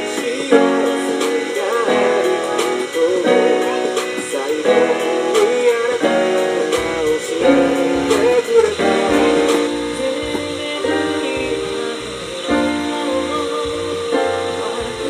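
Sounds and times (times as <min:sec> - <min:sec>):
electronic keyboard melody: 0:00.0 - 0:15.0
low bass line: 0:06.7 - 0:15.0.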